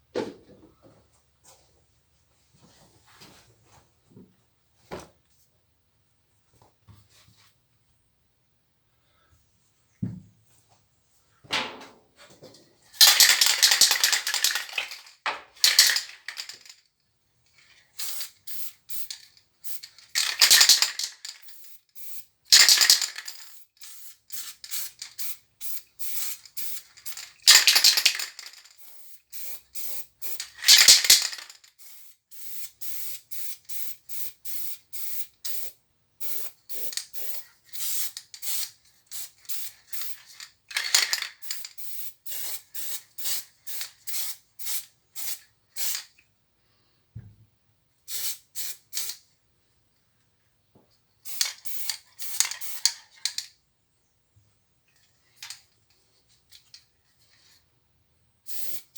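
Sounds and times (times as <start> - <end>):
spray paint can hissing: 18.0 - 40.2, 41.4 - 46.0, 48.1 - 49.2, 51.2 - 52.9, 58.5 - 58.9.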